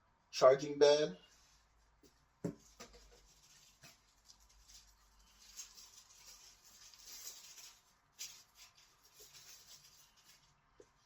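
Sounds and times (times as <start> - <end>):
packaging and paper rustling: 2.5 - 10.6.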